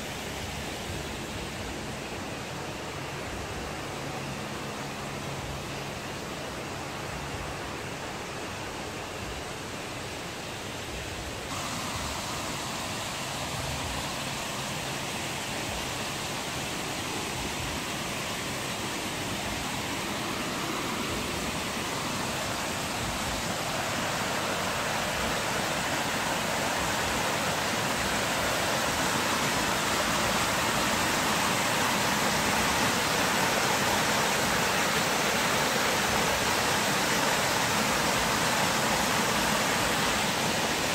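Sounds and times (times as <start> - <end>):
water fountain splashing: 19.2 - 40.9.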